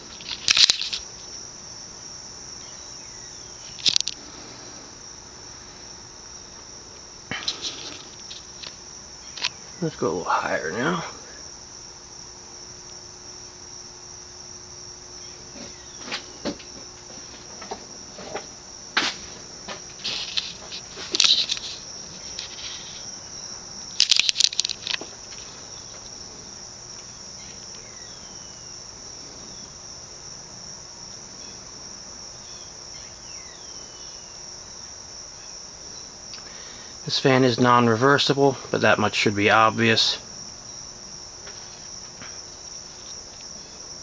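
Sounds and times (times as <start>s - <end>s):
crickets trilling: 0.0s - 44.0s.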